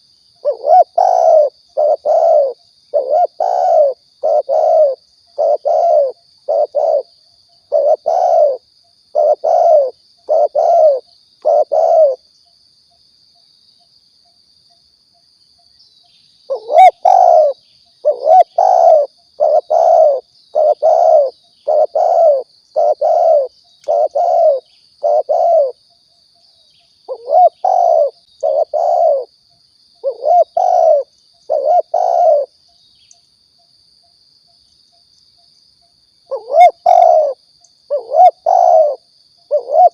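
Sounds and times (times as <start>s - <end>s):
dove cooing: 0.4s - 12.2s, 16.5s - 25.8s, 27.1s - 29.3s, 30.0s - 32.5s, 36.3s - 39.9s.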